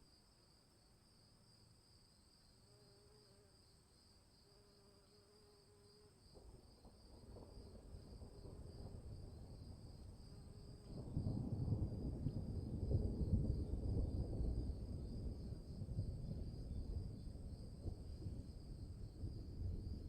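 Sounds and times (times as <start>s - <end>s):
insects chirring: 0.0s - 20.0s
thunder rumbling: 10.8s - 20.0s.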